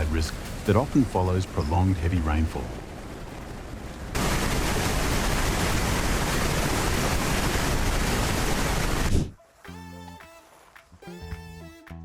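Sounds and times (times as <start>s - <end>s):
mud and debris flow rushing: 0.0s - 9.3s.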